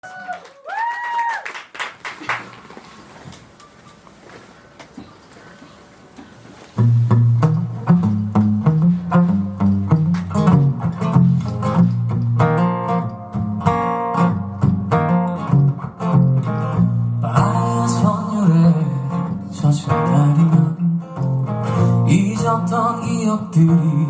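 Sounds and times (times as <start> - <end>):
steady bass line: 6.8 - 17.7
acoustic guitar strumming chords: 6.8 - 24.0.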